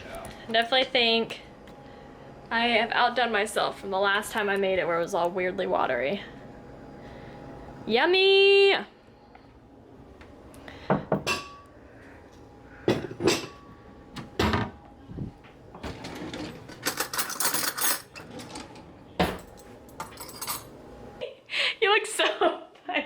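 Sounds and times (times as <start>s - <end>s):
dishes and utensils clinking: 12.9s - 13.6s, 15.8s - 20.7s.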